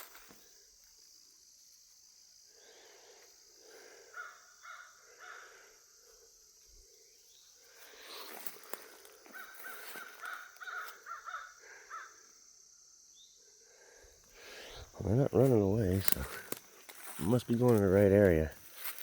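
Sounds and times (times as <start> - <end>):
high-pitched insect drone: 0.0 - 19.0
distant crows cawing: 3.7 - 5.9, 8.7 - 12.3.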